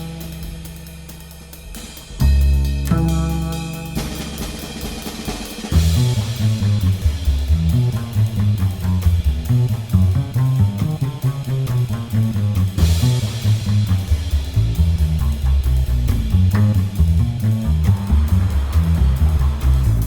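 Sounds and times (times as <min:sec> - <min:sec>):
rock instrumental music: 0:02.1 - 0:08.4.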